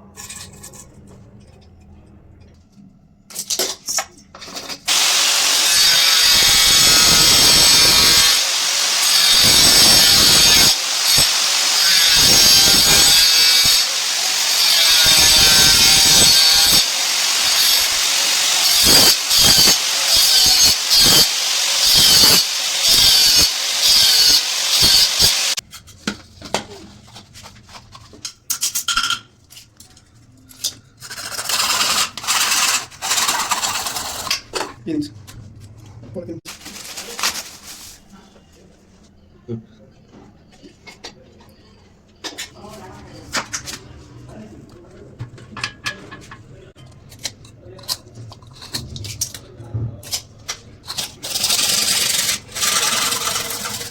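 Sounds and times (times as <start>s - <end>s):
power tool running under load: 4.9s - 25.6s.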